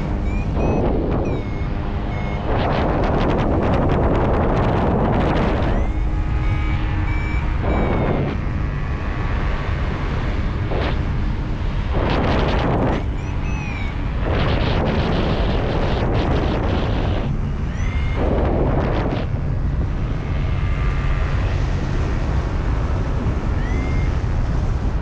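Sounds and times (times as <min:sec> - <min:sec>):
variometer high beeps: 0:00.0 - 0:03.4, 0:05.5 - 0:08.4, 0:13.1 - 0:16.4, 0:17.0 - 0:18.4
wind buffeting microphone: 0:00.0 - 0:25.0.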